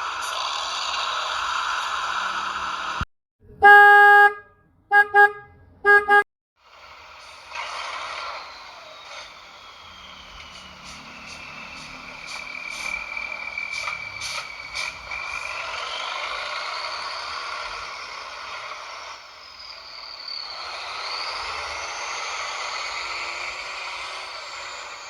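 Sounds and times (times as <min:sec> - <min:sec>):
toy truck motor whining: 0:00.0 - 0:03.0, 0:06.6 - 0:25.0.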